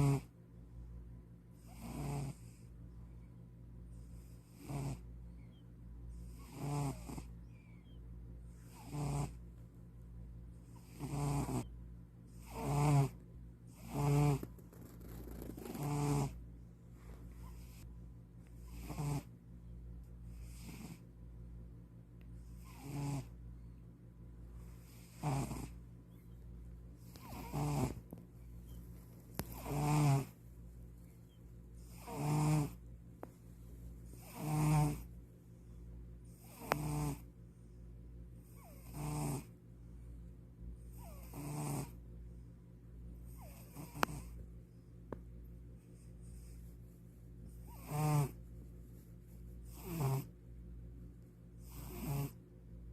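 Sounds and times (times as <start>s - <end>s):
cat snoring: 0.0s - 0.3s, 1.6s - 2.7s, 4.0s - 5.1s, 6.1s - 7.9s, 8.5s - 9.4s, 10.6s - 11.7s, 12.3s - 16.4s, 17.4s - 17.8s, 18.6s - 19.3s, 20.3s - 21.0s, 22.5s - 23.3s, 24.8s - 25.8s, 27.0s - 28.1s, 29.3s - 30.4s, 31.8s - 32.8s, 34.2s - 35.1s, 36.4s - 37.3s, 38.4s - 39.5s, 40.9s - 42.0s, 43.3s - 44.4s, 47.6s - 48.4s, 49.7s - 50.3s, 51.6s - 52.4s.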